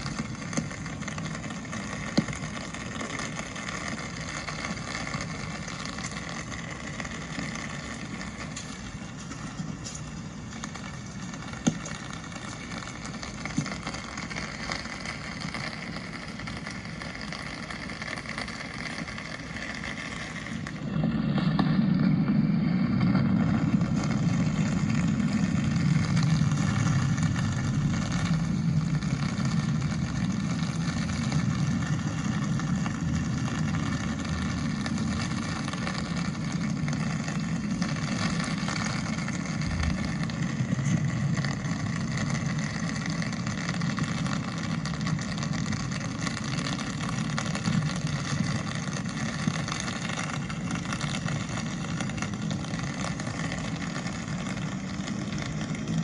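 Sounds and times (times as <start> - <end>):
rain hissing: 0.0 - 55.8
low vehicle rumble: 19.1 - 56.0.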